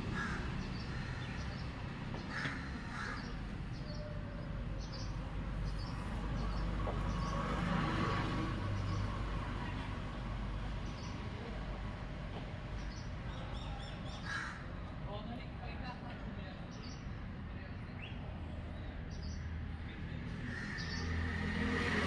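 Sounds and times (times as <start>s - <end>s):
harsh caw-like bird calls: 0.0s - 5.0s, 13.6s - 14.9s, 20.3s - 21.6s.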